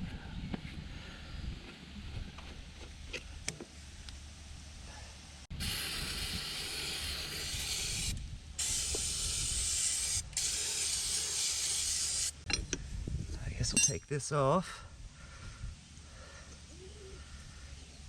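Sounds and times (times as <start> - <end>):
pressurized air hissing: 5.6 - 12.5.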